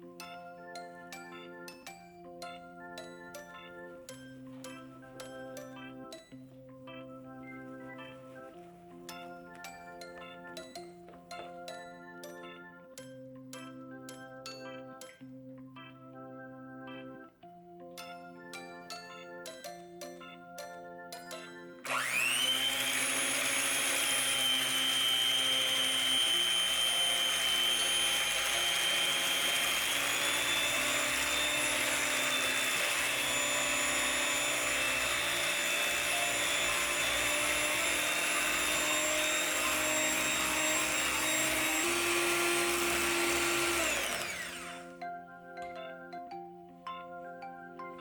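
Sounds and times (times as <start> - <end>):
electric hand mixer whining: 21.8 - 45.0.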